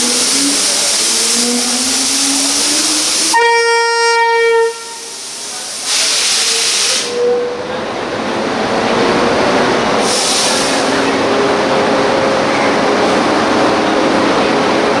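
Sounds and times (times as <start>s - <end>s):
locomotive horn blast: 3.3s - 5.2s
air hissing: 4.0s - 7.3s, 10.0s - 11.1s.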